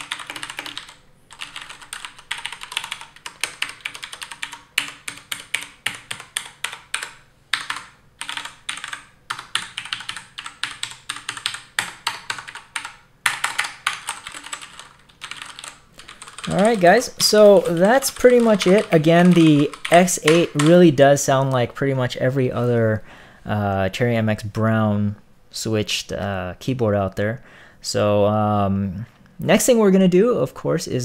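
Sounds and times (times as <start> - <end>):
fast typing on mechanical keyboard: 0.0 - 20.8.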